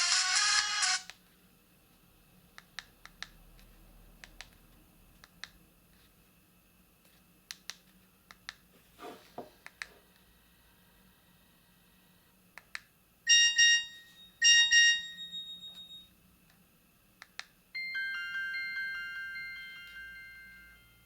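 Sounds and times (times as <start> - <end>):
phone ringtone: 0.0 - 1.1, 13.3 - 16.1, 17.8 - 21.0.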